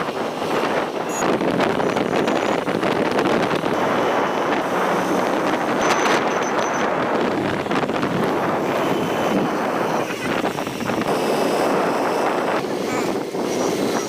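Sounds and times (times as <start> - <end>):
traffic noise: 0.0 - 14.0
wind on microphone: 0.0 - 14.0.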